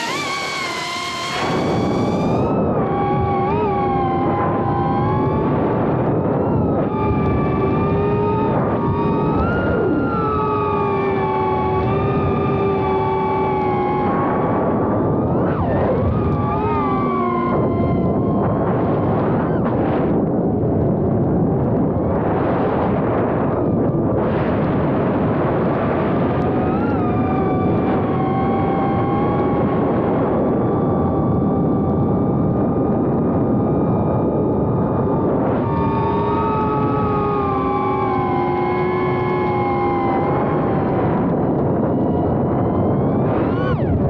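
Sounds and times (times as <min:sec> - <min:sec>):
drone motors whining: 0:00.0 - 0:05.3, 0:35.8 - 0:41.2.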